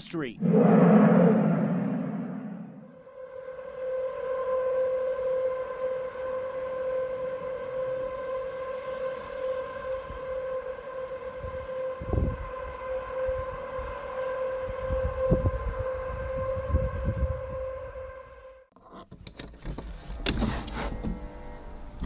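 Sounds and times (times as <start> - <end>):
horn-like drone: 0.0 - 18.7, 20.4 - 22.0.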